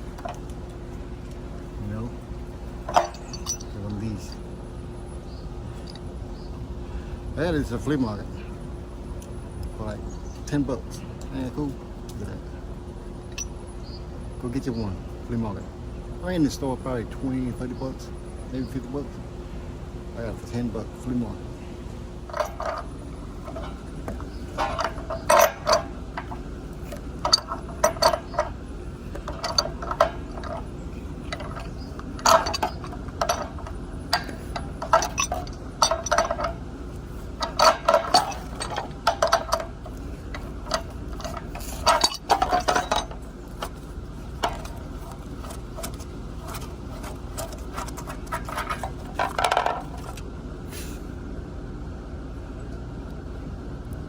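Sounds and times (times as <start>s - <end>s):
faint steady hum: 0.0s - 54.0s
wrench clinking on metal fittings: 2.9s - 4.4s, 22.3s - 36.6s, 37.3s - 43.8s, 44.4s - 50.2s.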